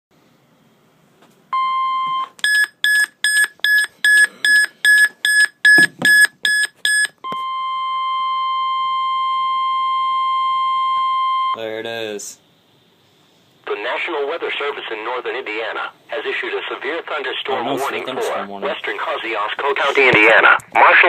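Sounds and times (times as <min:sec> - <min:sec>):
long steady alarm tone: 0:01.6 - 0:11.6.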